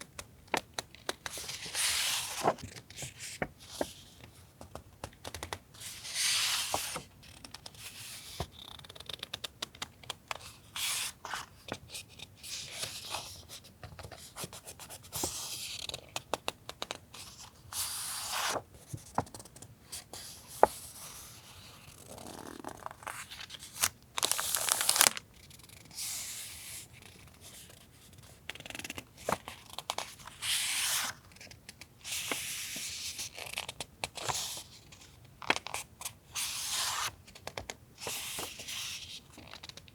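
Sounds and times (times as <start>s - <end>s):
paper rustling and sliding: 1.3s - 4.1s, 5.8s - 7.0s, 23.0s - 25.2s.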